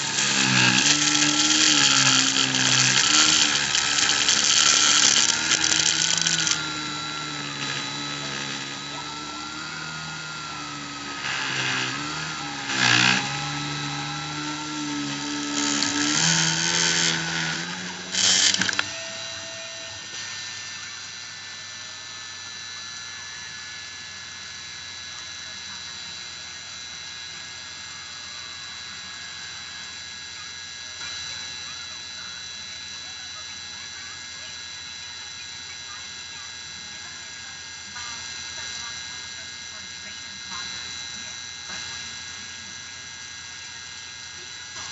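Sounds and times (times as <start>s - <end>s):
bit cutting into acrylic: 0.0s - 20.6s
rotary tool whining: 0.0s - 44.9s.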